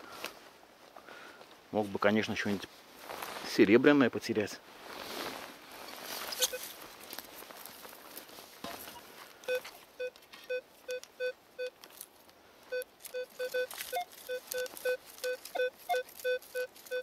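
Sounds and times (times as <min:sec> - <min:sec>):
metal detector beeping: 0:06.3 - 0:06.7, 0:09.4 - 0:11.8, 0:12.7 - 0:17.0.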